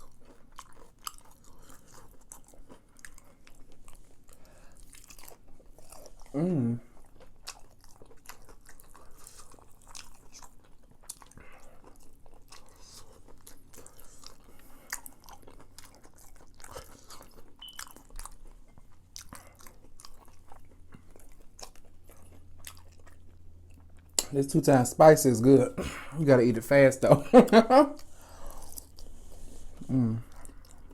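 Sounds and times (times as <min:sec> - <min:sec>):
person chewing crispy food: 0:00.0 - 0:24.8, 0:27.5 - 0:30.9.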